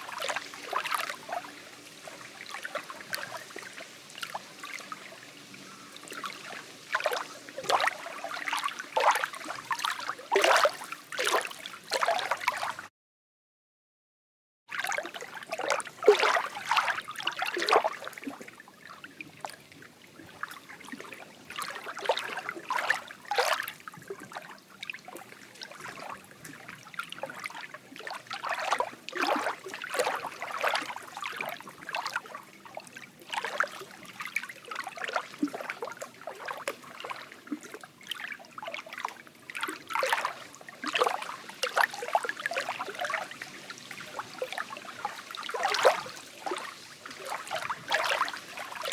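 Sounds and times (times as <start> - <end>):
soft steady hiss: 0.0 - 12.0
water gurgling and lapping: 0.0 - 12.9, 14.7 - 48.9.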